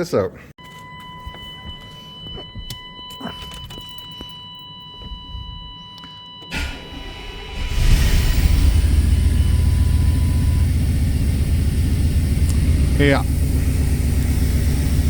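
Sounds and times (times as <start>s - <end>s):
engine running steadily: 6.6s - 15.0s.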